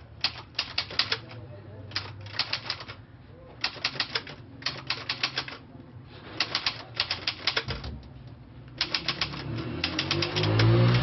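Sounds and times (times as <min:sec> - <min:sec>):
typewriter keys striking: 0:00.2 - 0:03.0, 0:03.6 - 0:05.6, 0:06.4 - 0:07.9, 0:08.8 - 0:11.0.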